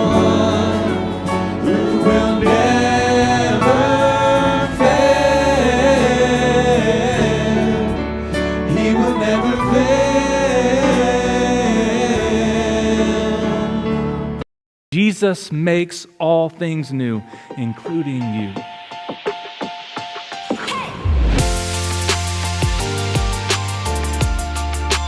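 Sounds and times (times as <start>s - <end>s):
band accompaniment: 0.0s - 7.9s
voices singing together: 0.0s - 14.4s.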